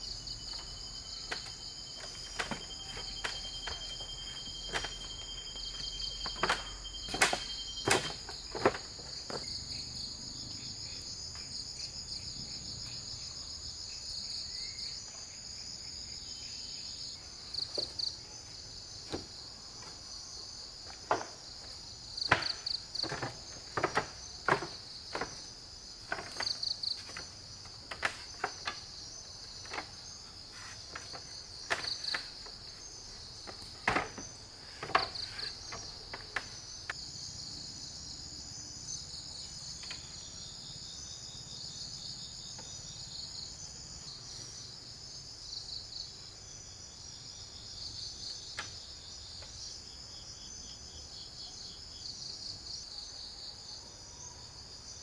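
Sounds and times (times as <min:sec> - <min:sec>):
insect chorus with chirping trills: 0:00.0 - 0:55.0
sharp knocks and clicks: 0:22.3 - 0:25.4, 0:33.5 - 0:36.6.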